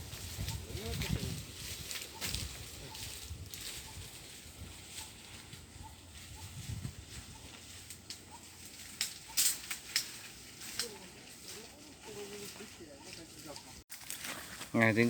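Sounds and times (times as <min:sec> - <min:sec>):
low rumble of wind: 0:00.0 - 0:10.7
hikers moving through brush: 0:00.0 - 0:15.0
sharp snaps and cracks: 0:08.8 - 0:11.0.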